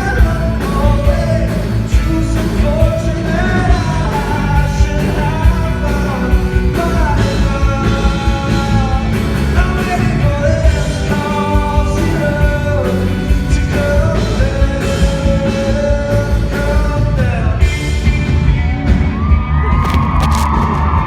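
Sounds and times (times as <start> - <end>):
live rock band with drums: 0.0 - 21.0.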